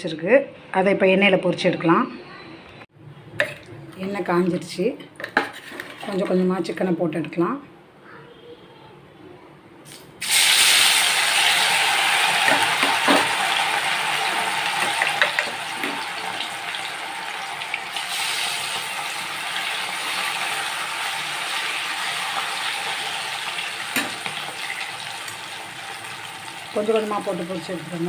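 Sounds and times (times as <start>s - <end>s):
oil sizzling while deep-frying: 9.9s - 28.0s.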